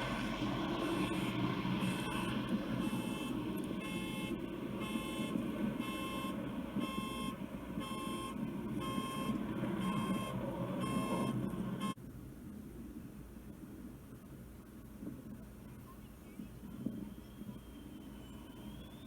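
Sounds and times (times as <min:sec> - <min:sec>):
low jet rumble: 0:00.0 - 0:14.2
car alarm beeping: 0:00.8 - 0:12.0.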